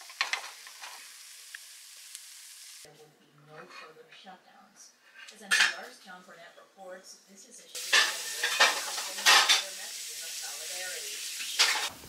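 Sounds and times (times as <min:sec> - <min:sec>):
batter sizzling in a frying pan: 0:00.0 - 0:02.9, 0:07.8 - 0:12.0.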